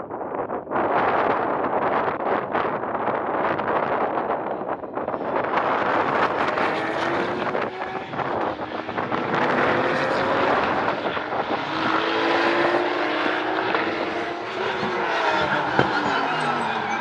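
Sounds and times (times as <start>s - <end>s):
race car engines passing: 5.0s - 17.0s.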